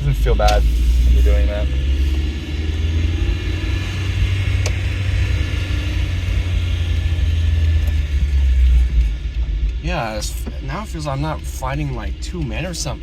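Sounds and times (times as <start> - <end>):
car engine and road rumble: 0.0 - 13.0.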